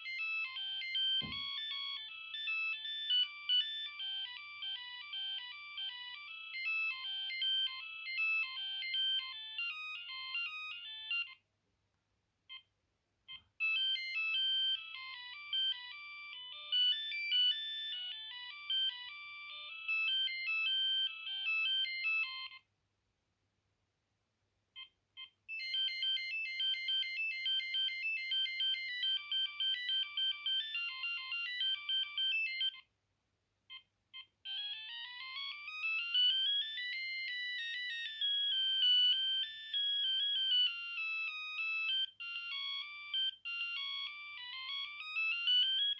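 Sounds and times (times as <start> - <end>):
brief phone beeps: 1.2 - 1.7.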